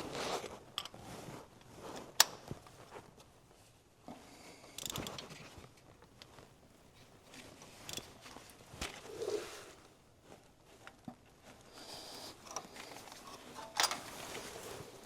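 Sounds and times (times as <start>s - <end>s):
scraping and rustling: 12.3s - 15.0s.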